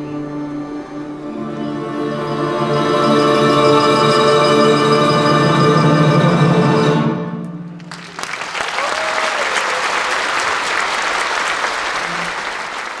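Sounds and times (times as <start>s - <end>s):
audience applause: 7.8s - 13.0s.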